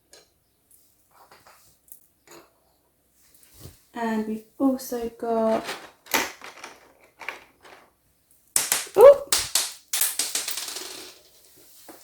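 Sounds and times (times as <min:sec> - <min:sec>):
plastic toy clattering: 0:05.4 - 0:08.0, 0:08.6 - 0:11.4.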